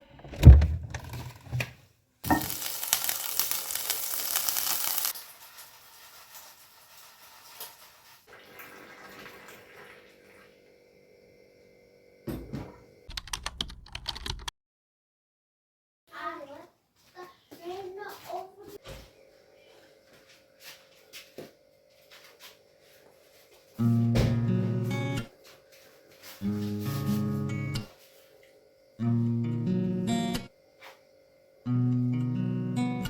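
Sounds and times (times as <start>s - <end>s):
water running from a tap: 2.2s - 10.7s
thump: 24.2s - 24.4s.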